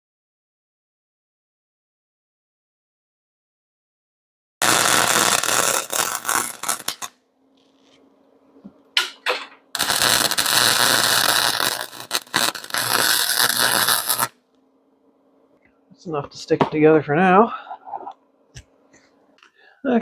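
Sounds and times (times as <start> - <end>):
short welding zaps: 4.6 - 7.1, 9.8 - 14.4
arc welder crackling: 4.6 - 8.0, 9.0 - 14.4
faint steady hum: 4.6 - 20.0.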